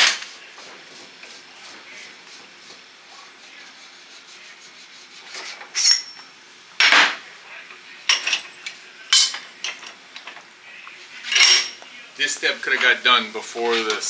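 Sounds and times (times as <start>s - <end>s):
faint rubbing of steel parts: 3.2s - 6.2s
metal clinks and clanks: 11.3s - 11.8s.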